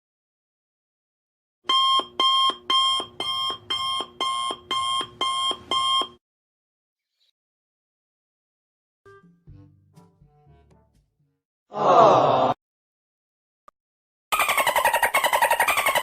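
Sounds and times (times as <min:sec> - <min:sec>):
electronic alarm beeping: 0:01.7 - 0:06.2.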